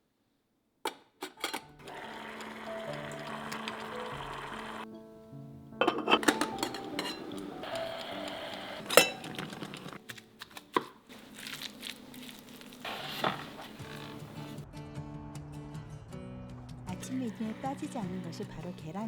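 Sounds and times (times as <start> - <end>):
kitchenware clinking and clattering: 1.2 - 4.8, 5.8 - 10.0
soft background music: 1.5 - 10.6, 11.4 - 19.0.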